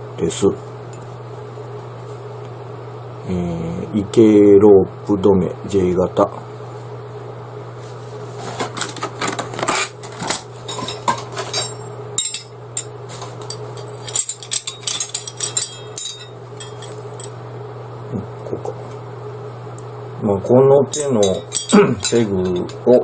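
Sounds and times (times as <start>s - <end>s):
metal stakes clinking: 10.2s - 17.4s, 20.9s - 22.8s
low hum: 10.7s - 20.2s.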